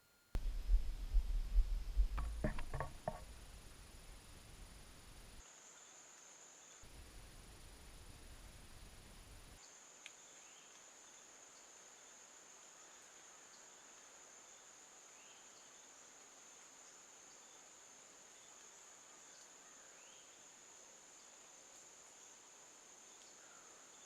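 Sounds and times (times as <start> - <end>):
insects trilling: 2.2 - 24.0
faint click: 10.0 - 10.8.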